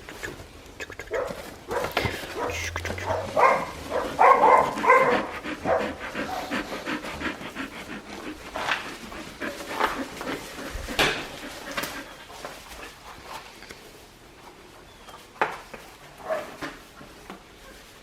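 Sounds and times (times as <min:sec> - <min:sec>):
quick little noises: 0:00.0 - 0:12.4
puppies whining: 0:01.1 - 0:12.4.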